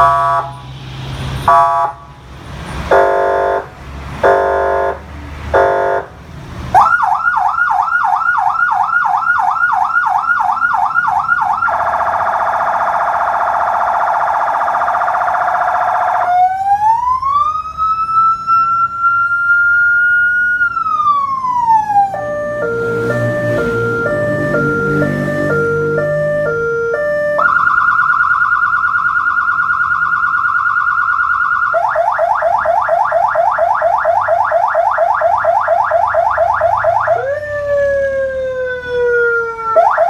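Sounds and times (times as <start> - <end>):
electronic siren: 0.0 - 0.6, 6.8 - 40.0.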